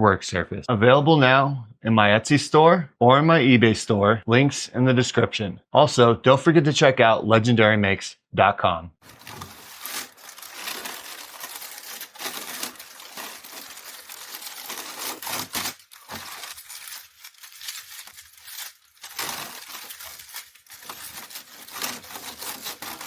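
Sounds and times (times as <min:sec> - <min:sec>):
paper crinkling: 0:09.0 - 0:23.0.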